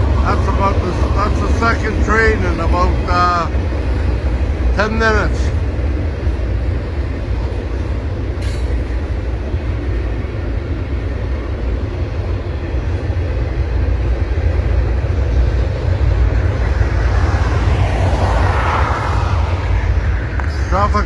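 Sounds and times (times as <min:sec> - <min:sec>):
train passing rumble: 0:00.0 - 0:21.0.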